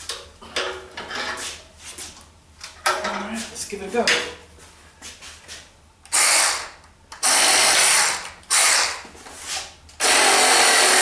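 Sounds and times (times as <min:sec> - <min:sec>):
cordless hacksaw cutting wood: 0:06.1 - 0:09.0, 0:10.0 - 0:11.0.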